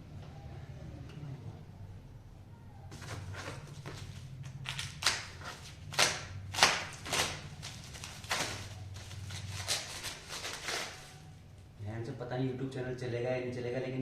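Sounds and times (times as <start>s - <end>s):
low steady hum: 0.0s - 14.0s
packaging rustling and ripping: 2.9s - 11.3s.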